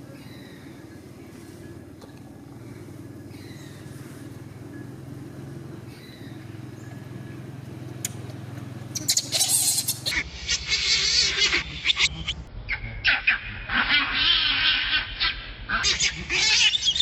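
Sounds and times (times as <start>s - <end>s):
small engine humming: 0.0s - 10.1s.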